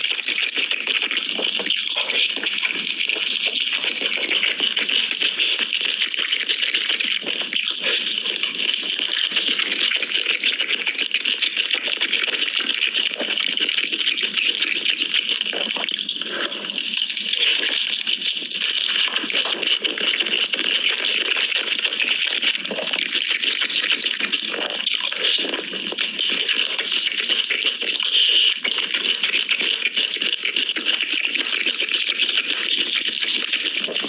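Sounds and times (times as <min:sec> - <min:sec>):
chewing crispy fried chicken: 0:00.0 - 0:34.0.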